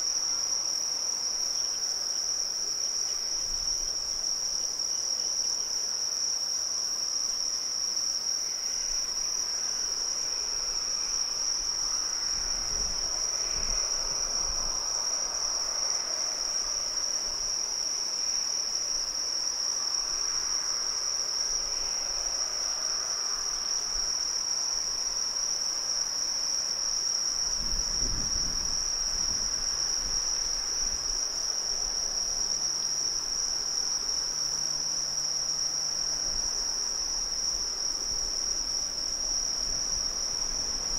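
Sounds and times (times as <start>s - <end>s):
crickets trilling: 0.0s - 40.9s.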